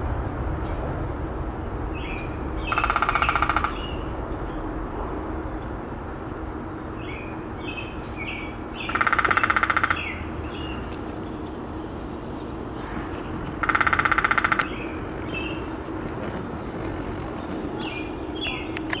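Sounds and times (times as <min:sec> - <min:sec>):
woodpecker drumming: 0:02.1 - 0:04.1, 0:07.6 - 0:11.4, 0:12.3 - 0:19.0
small birds chirping: 0:05.5 - 0:19.0.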